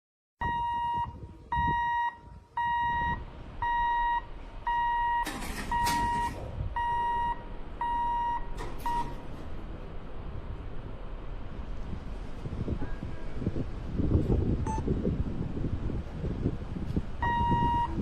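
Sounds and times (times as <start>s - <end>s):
level-crossing warning beeps: 0.4s - 9.2s, 14.6s - 14.9s, 17.2s - 18.0s.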